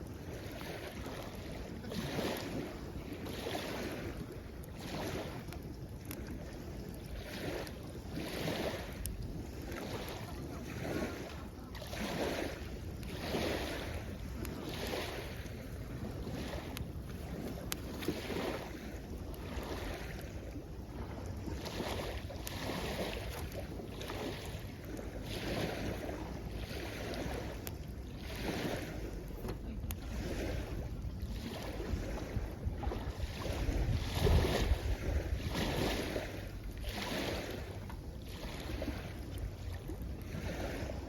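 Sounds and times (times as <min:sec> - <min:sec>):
small waves washing in: 0:00.0 - 0:41.0
wind rumbling on microphone: 0:00.0 - 0:41.0
campfire crackling and popping: 0:04.2 - 0:08.1, 0:08.8 - 0:10.6, 0:13.8 - 0:20.6.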